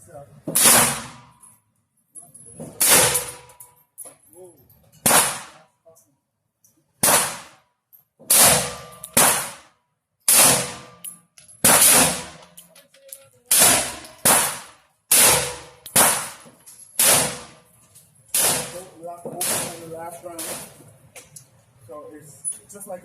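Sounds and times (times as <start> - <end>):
rifle shots with ringing echo: 0.6 - 1.4, 2.8 - 3.6, 5.0 - 5.6, 7.0 - 7.6, 8.3 - 9.7, 10.3 - 11.0, 11.6 - 12.6, 13.5 - 17.6, 18.3 - 20.7.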